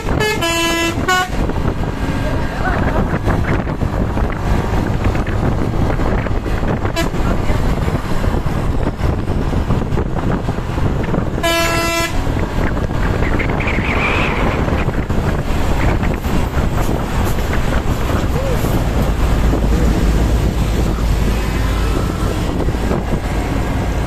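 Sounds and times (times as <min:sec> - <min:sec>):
vehicle horn toot: 0:00.0 - 0:01.4, 0:11.4 - 0:12.2
road traffic: 0:00.0 - 0:24.0.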